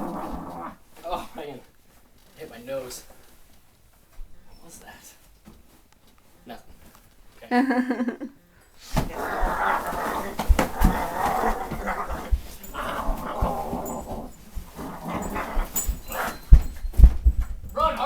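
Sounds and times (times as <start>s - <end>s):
growling: 0.0s - 0.8s, 9.0s - 16.7s
knocks and thumps: 9.0s - 18.0s.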